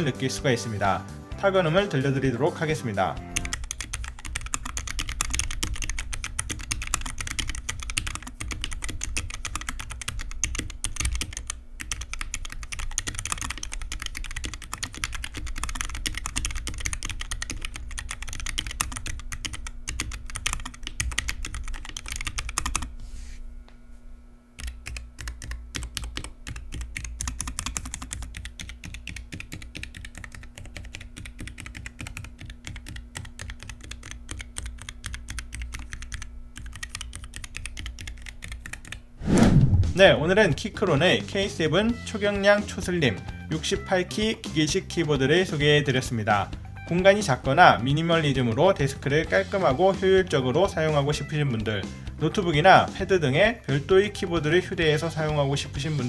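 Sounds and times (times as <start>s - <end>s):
mechanical keyboard typing: 3.3s - 22.9s, 24.6s - 39.0s.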